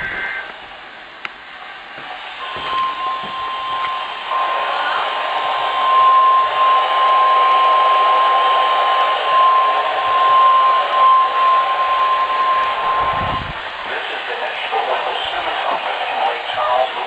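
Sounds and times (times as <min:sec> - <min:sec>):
long steady high alarm tone: 0:02.0 - 0:17.0
radio static: 0:09.3 - 0:17.0.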